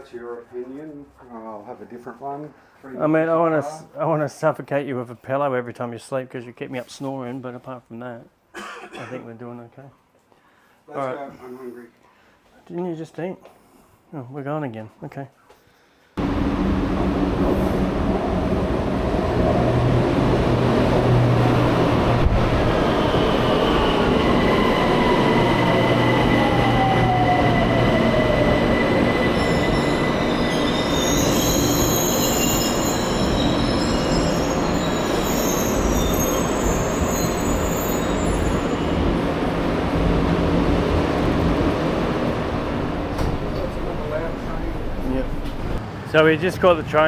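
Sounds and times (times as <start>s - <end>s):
train rumbling: 16.2s - 47.0s
high wheel squeals: 22.9s - 39.3s.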